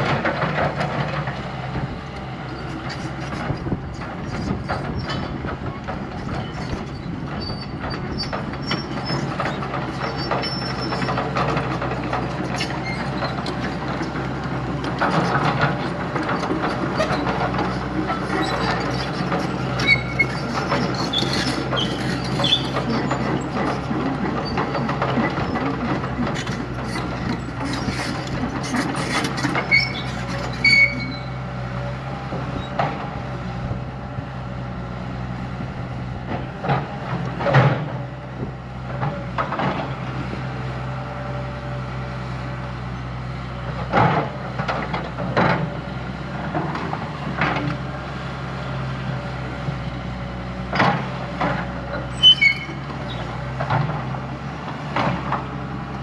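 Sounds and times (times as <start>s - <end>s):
heavy diesel engine running: 0.0s - 56.0s
short high squeaks: 19.7s - 23.2s, 27.7s - 31.4s, 52.0s - 53.3s.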